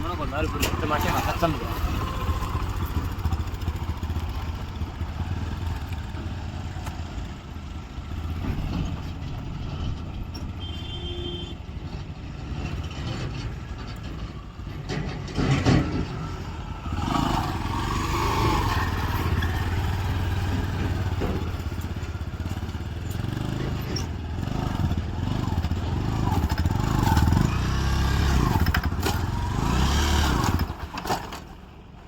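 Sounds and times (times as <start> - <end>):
heavy vehicle engine running: 0.0 - 32.0
loud clatter: 12.5 - 31.6.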